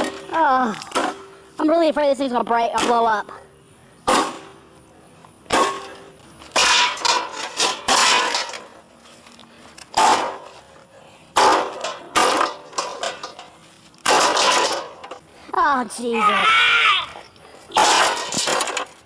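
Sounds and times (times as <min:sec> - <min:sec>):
heavy metallic clangs and crashes: 0:04.0 - 0:04.6, 0:05.5 - 0:08.8, 0:09.9 - 0:10.6, 0:11.3 - 0:15.2, 0:17.7 - 0:19.0.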